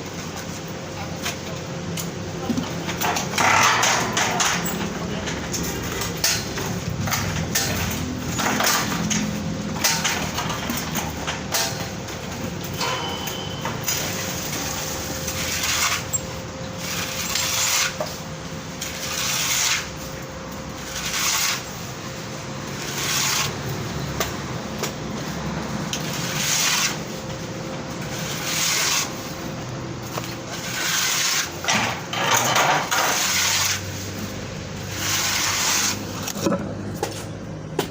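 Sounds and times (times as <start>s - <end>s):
rough scraping strokes: 15.3s - 16.1s, 16.8s - 18.0s, 20.8s - 21.8s, 22.8s - 23.6s, 26.0s - 27.1s, 28.1s - 29.2s, 30.5s - 31.6s, 32.7s - 34.0s, 34.8s - 36.4s.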